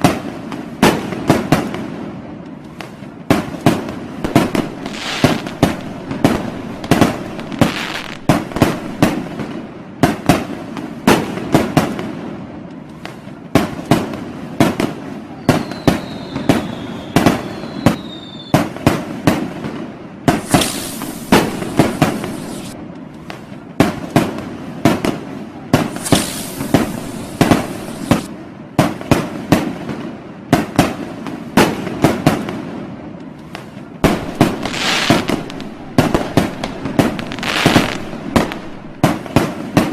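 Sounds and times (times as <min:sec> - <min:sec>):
firecrackers banging: 0:02.9 - 0:12.0, 0:20.3 - 0:22.8, 0:24.9 - 0:28.3, 0:33.6 - 0:39.9
falling firework whistle: 0:04.2 - 0:09.5, 0:15.3 - 0:18.8, 0:20.3 - 0:22.8, 0:25.8 - 0:28.3, 0:34.0 - 0:39.9
high hissing crackle: 0:04.2 - 0:09.5, 0:20.3 - 0:22.8, 0:25.8 - 0:28.3, 0:34.0 - 0:39.5.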